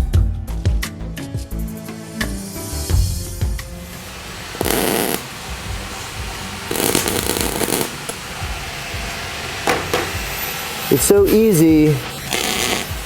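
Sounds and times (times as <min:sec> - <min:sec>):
arc welding bursts: 0:03.7 - 0:13.0.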